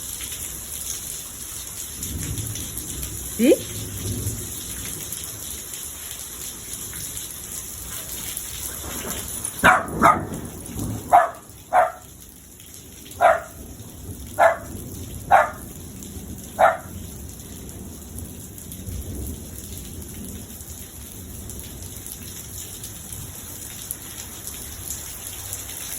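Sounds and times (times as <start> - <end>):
steady rain: 0.0 - 25.9
dog barking: 7.9 - 12.2, 13.2 - 13.7, 14.3 - 15.8, 16.5 - 17.0.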